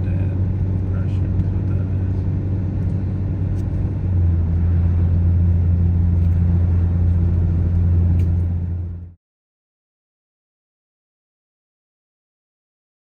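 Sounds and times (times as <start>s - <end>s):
car interior road noise: 0.0s - 9.2s.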